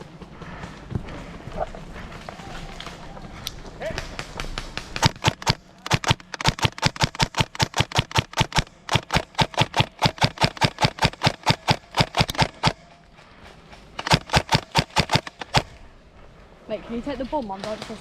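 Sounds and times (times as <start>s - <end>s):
airsoft gun shots: 4.0s - 12.9s, 14.0s - 15.8s.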